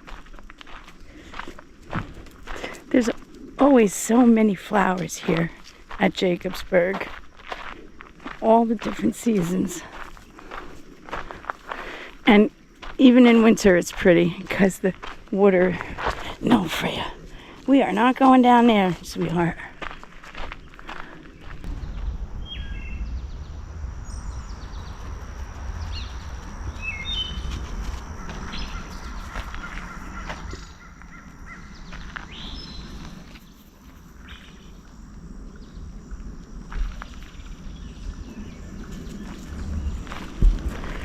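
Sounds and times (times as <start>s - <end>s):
low rumble from walking: 0.0s - 41.0s
bird chirps: 21.4s - 27.6s.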